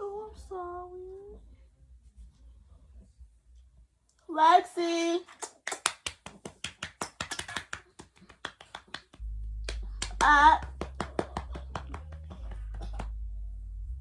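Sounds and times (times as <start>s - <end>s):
low steady hum: 9.1s - 14.0s.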